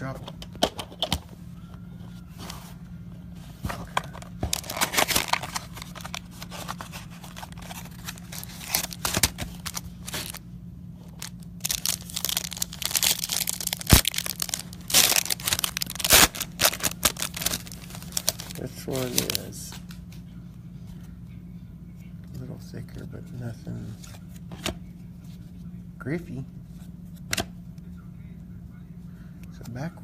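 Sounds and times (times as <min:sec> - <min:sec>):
low electrical hum: 0:00.0 - 0:30.0
plastic wrapping crinkling: 0:03.9 - 0:10.4, 0:11.1 - 0:19.6.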